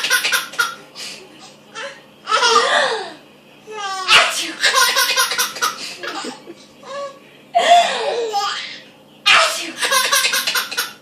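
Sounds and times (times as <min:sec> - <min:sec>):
baby belly laughing: 0:00.0 - 0:00.8, 0:03.8 - 0:08.8, 0:09.8 - 0:11.0.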